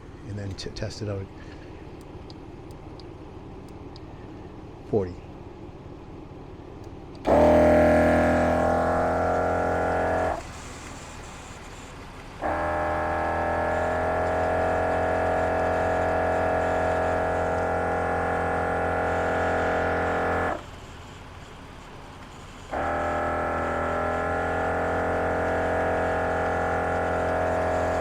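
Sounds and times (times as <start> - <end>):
air compressor humming: 0.0 - 28.0.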